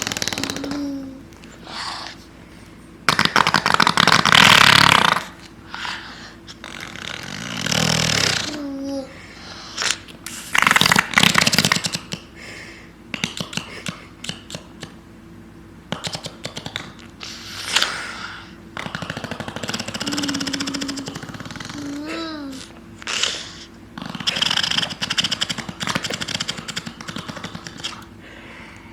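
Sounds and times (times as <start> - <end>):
toddler blowing raspberries: 3.1 - 11.8, 17.2 - 28.0.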